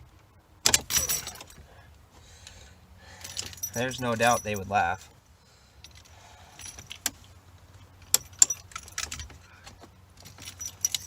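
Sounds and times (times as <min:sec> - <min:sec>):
dashboard parts clicking and rattling: 0:00.6 - 0:01.7, 0:05.9 - 0:11.0.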